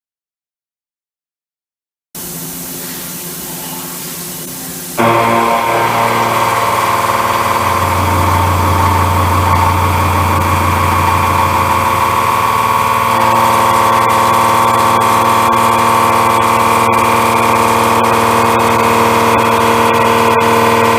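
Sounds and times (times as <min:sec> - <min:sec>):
face mill cutting steel: 0:04.9 - 0:20.9.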